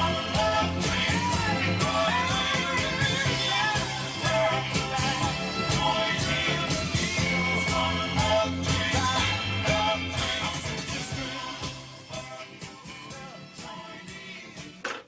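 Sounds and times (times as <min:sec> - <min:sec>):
rock song with singer: 0:00.0 - 0:15.0.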